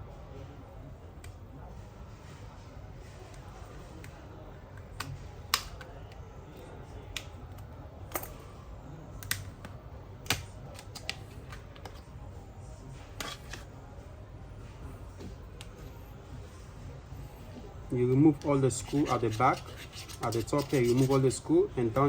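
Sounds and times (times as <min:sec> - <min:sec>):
plastic clicks and snaps: 0:05.0 - 0:05.9, 0:09.2 - 0:11.9.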